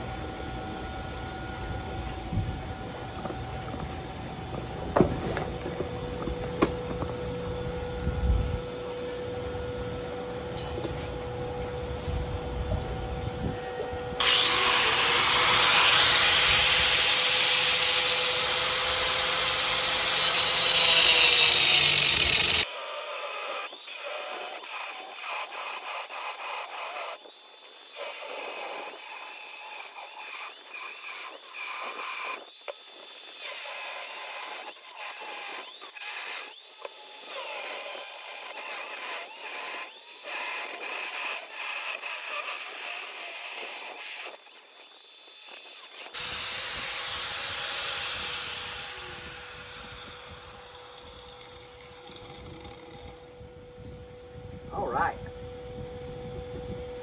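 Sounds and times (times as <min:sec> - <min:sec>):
cutoff wheel grinding steel: 0:13.7 - 0:27.1.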